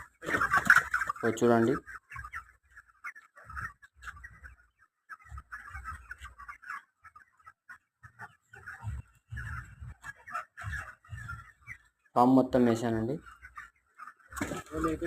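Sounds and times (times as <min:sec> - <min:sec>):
chickens calling softly: 0:00.0 - 0:15.0
low thumps: 0:08.8 - 0:10.0.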